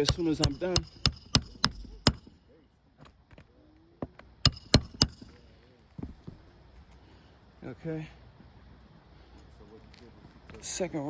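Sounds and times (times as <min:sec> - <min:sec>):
hammer striking metal tool: 0:00.0 - 0:02.4, 0:04.5 - 0:05.4.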